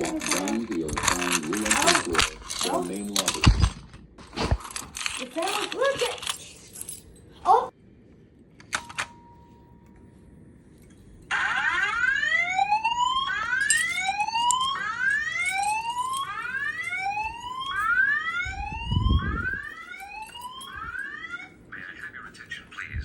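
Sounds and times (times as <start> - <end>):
fire alarm whoop tone: 11.3 - 21.6.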